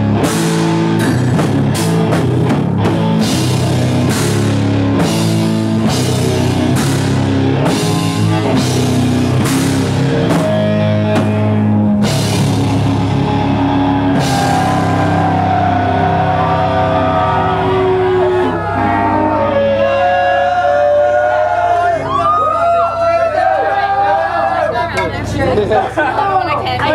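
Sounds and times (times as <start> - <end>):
heavy metal band playing: 0.0 - 26.9.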